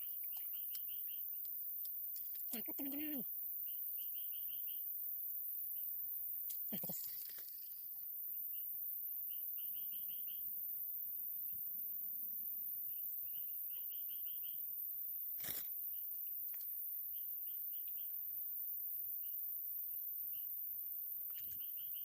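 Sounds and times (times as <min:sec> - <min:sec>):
insect hiss: 0:00.0 - 0:22.0
frog chirping: 0:02.5 - 0:04.9, 0:08.5 - 0:10.6, 0:13.3 - 0:14.7.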